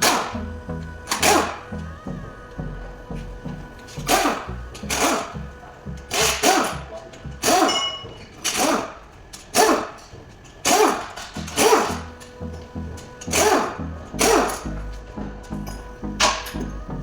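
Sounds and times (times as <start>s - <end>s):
background music with bass and beat: 0.0s - 7.6s, 11.4s - 17.0s.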